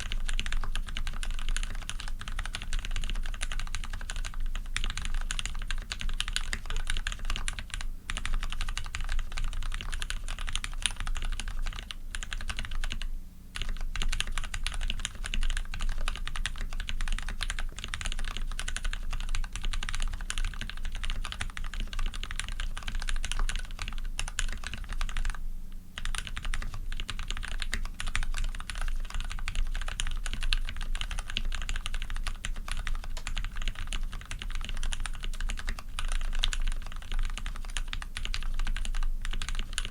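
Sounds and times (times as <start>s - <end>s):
fast typing on mechanical keyboard: 0.0s - 25.4s, 26.0s - 39.9s.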